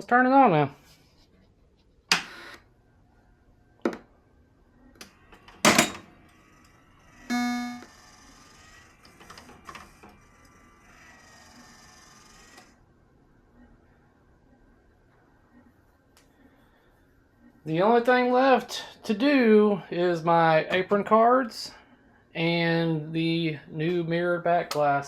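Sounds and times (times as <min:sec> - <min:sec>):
pinball machine powering up: 0:07.0 - 0:12.7
faint game sounds: 0:07.1 - 0:09.0
short electronic tone: 0:07.3 - 0:08.0.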